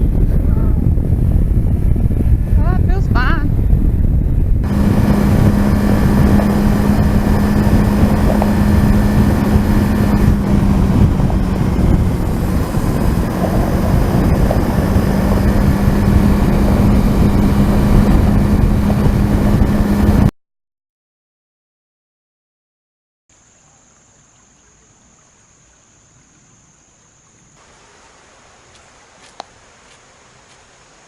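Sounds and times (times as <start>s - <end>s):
motorcycle engine cruising: 0.0s - 20.3s
wind rush on microphone: 0.0s - 20.3s.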